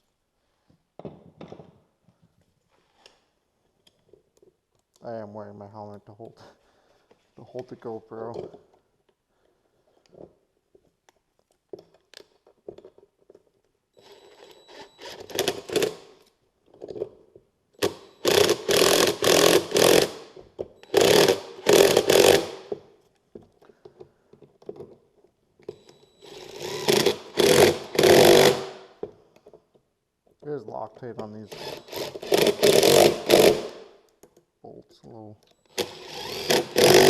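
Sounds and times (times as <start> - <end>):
power driver whirring: 26.2 - 28.7, 31.5 - 33.7, 35.6 - 37.0.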